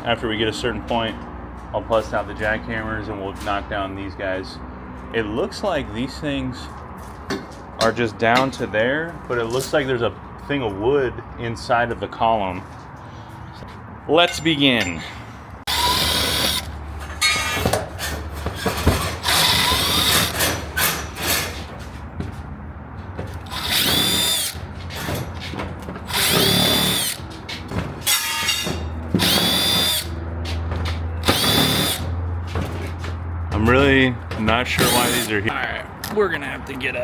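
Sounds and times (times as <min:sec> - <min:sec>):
power drill spinning up: 0:15.7 - 0:16.7, 0:19.2 - 0:20.4, 0:23.4 - 0:24.6, 0:26.1 - 0:27.2, 0:29.2 - 0:30.1, 0:31.2 - 0:32.0, 0:34.8 - 0:35.3.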